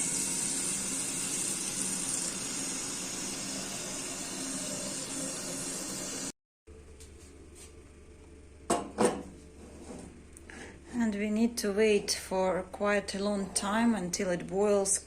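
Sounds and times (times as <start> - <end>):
water running from tap into pot: 0.0 - 6.3.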